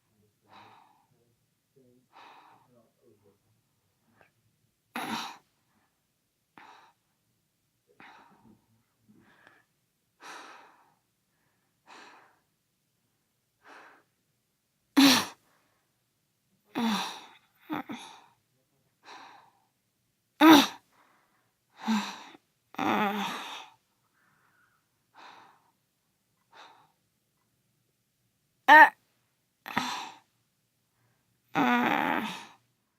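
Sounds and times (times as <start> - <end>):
boy grunting: 5.0 - 5.4, 20.4 - 20.8, 28.7 - 29.0, 31.6 - 32.5
boy breathing: 23.1 - 25.8, 29.7 - 30.3.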